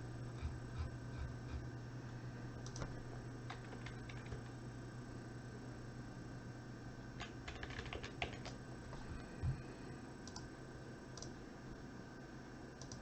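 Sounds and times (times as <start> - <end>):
faint steady hum: 0.0 - 13.0
computer keyboard typing: 3.5 - 4.5, 7.2 - 8.6, 12.8 - 13.0.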